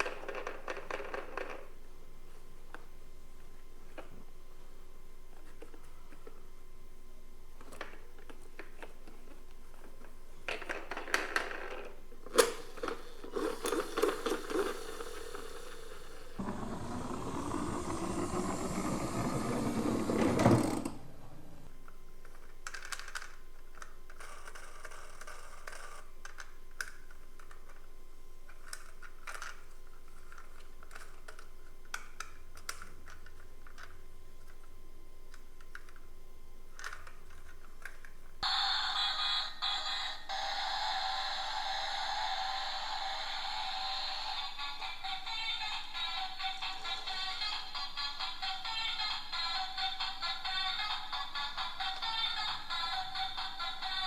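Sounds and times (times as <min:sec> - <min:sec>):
toys clicking and rattling: 0:00.0 - 0:01.8, 0:07.6 - 0:15.6, 0:22.2 - 0:27.8, 0:28.5 - 0:34.6, 0:36.8 - 0:38.1
rolling scraping noise: 0:13.4 - 0:21.7.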